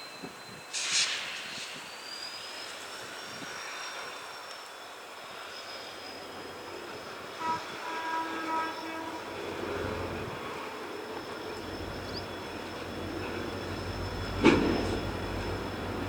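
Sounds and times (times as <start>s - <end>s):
faint hiss with high whine: 0.0s - 16.0s
low rumble of train: 0.0s - 16.0s
distant locomotive air horn blasts: 7.2s - 10.4s.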